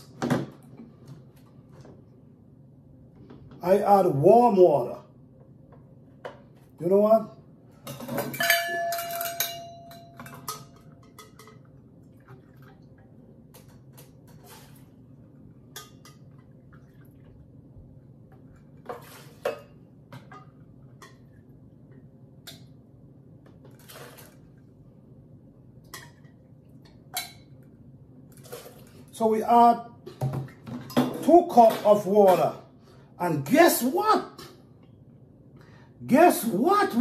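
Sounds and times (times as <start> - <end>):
faint steady hum: 0.0 - 37.0
dishes clinking and knocking: 7.8 - 11.8
dish ringing: 8.2 - 11.3.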